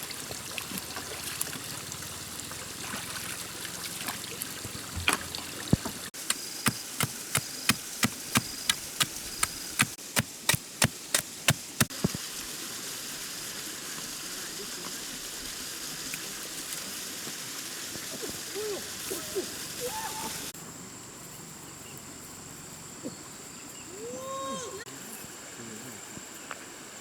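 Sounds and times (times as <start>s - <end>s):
running water: 0.0s - 20.6s.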